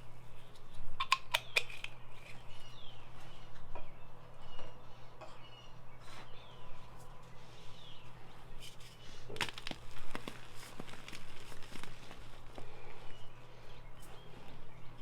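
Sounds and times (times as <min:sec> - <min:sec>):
birds chirping: 0:00.0 - 0:15.0
chalk crunching: 0:08.7 - 0:12.8.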